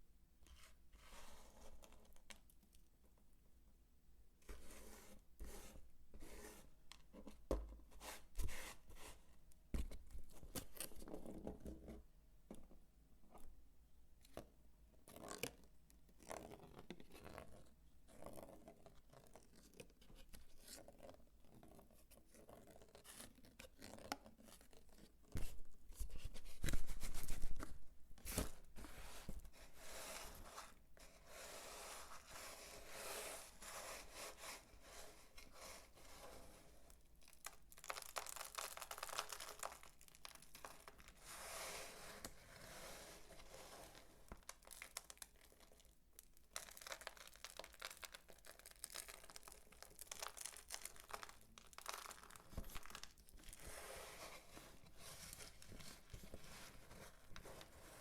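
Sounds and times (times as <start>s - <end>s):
soap scraping and crunching: 31.5s - 58.0s.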